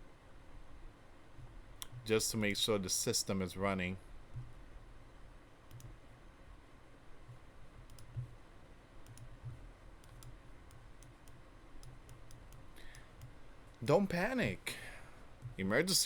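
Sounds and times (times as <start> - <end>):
soft low thumps: 4.3 - 4.6, 7.2 - 8.4, 9.2 - 9.7, 15.3 - 15.8
faint mouse clicks: 5.7 - 6.0, 7.3 - 8.4, 9.0 - 13.8.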